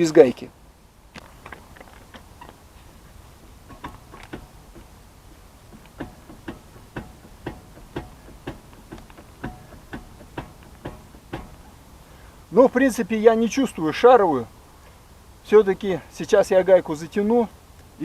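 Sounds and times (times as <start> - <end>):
wheel knocking: 1.2 - 12.2.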